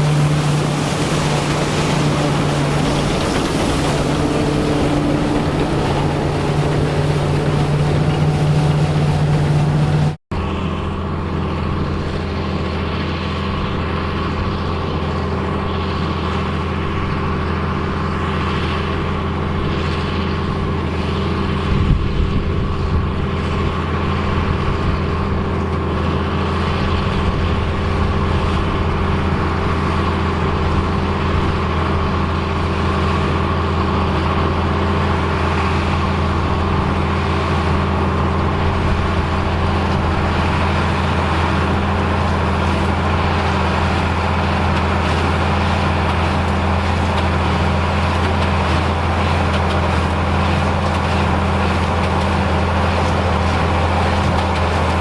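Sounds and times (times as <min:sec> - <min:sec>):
engine humming steadily: 0:00.0 - 0:55.0.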